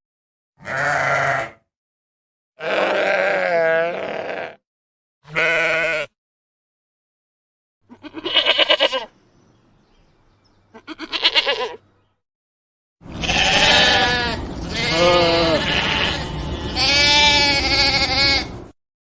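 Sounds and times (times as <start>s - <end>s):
lambs bleating: 0.6s - 1.6s, 2.6s - 4.6s, 5.3s - 6.1s, 7.9s - 9.1s, 10.7s - 11.8s, 13.1s - 18.6s.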